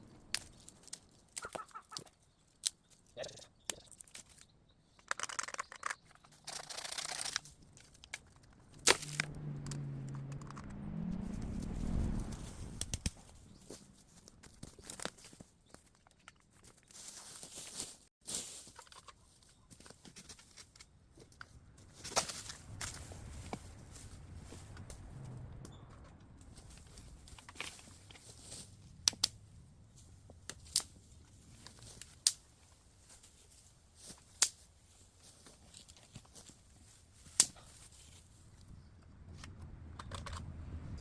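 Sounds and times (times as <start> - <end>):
bamboo snapping: 0.2 - 2.9, 3.6 - 10.6, 26.6 - 29.4, 30.4 - 32.6, 34.0 - 34.7, 37.2 - 38.0
dry leaves rustling and crackling: 6.3 - 10.0, 11.0 - 15.5, 16.5 - 25.5, 26.4 - 38.8
low hum rising in pitch: 8.5 - 13.7.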